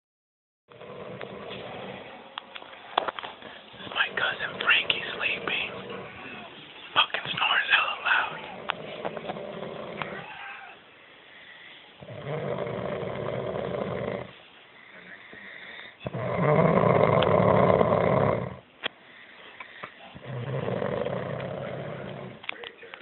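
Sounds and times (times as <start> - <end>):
loud snoring: 0.7 - 2.3, 8.2 - 10.4, 12.0 - 14.4, 15.7 - 18.6, 20.1 - 22.4.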